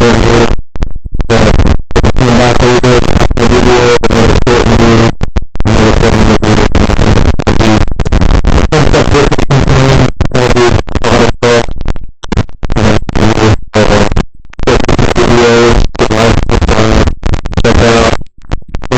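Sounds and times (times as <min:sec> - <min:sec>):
microphone static crackling: 0:00.0 - 0:18.9
pitched hum: 0:00.0 - 0:18.9.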